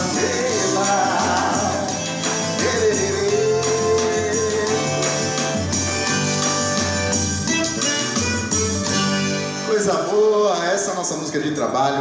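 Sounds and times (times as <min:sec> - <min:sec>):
steady beat: 0:00.0 - 0:09.3
live band playing: 0:00.0 - 0:11.2
jingling percussion: 0:00.0 - 0:12.0.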